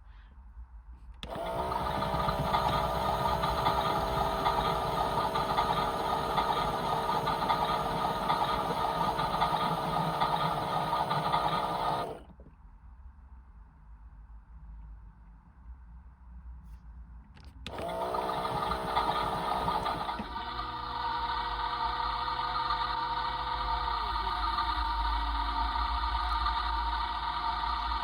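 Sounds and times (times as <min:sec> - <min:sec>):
small electric motor whining: 0:01.2 - 0:12.3, 0:17.7 - 0:28.0.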